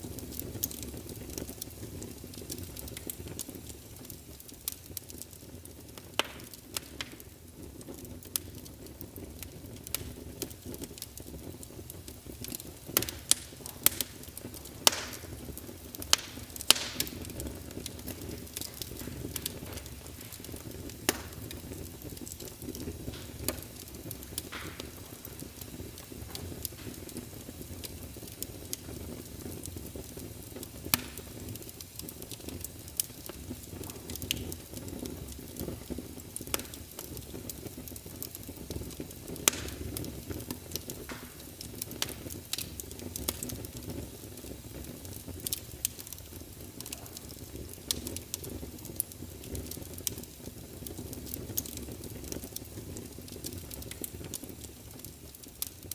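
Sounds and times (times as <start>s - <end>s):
sharp pops of fire: 0.0s - 55.9s
wood fire crackling: 0.0s - 55.9s
rain rushing: 13.1s - 27.5s.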